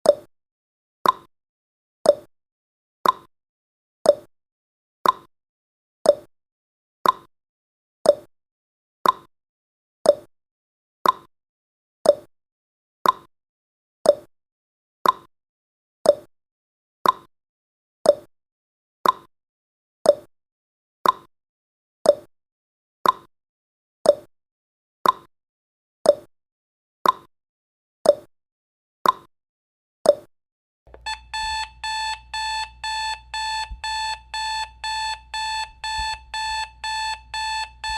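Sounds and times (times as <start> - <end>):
alarm clock beeping: 30.9 - 37.9
timer ticking: 30.9 - 37.9.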